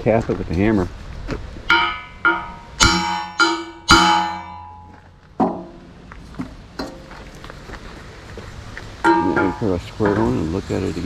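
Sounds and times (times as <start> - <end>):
hammer striking steel plate: 1.7 - 5.8, 9.1 - 10.3.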